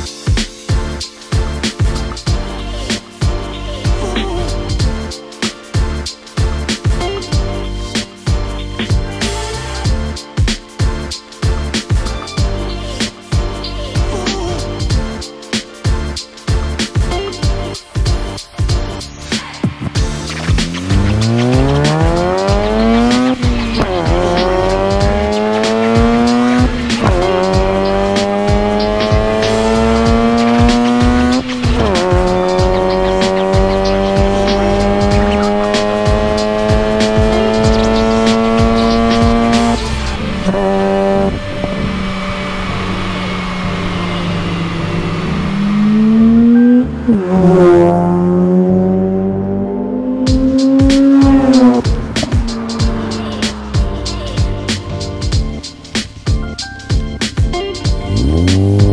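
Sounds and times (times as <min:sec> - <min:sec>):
background music with beat: 0:00.0 - 0:58.9
rotary engine accelerating: 0:19.4 - 0:56.2, 0:58.0 - 0:58.9.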